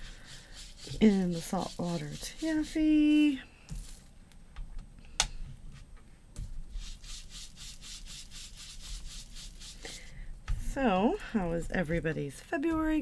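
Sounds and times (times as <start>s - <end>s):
ink pad brushing on paper: 0.0s - 3.4s, 6.7s - 10.0s.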